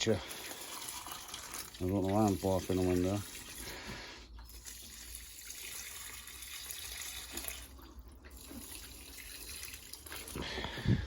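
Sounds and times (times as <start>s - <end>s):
water pouring in a stream: 0.0s - 11.0s.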